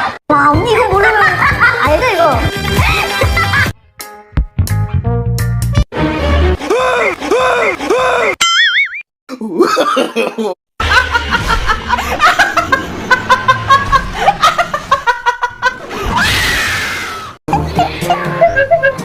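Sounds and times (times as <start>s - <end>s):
laughter in bursts: 2.8s - 3.8s, 9.5s - 16.0s, 17.5s - 19.0s.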